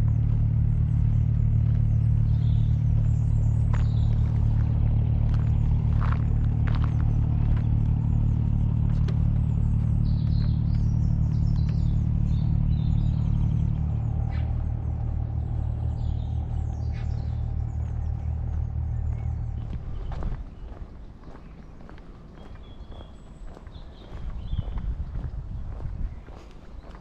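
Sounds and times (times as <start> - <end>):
engine humming: 0.0 - 27.0
small birds chirping: 0.0 - 27.0.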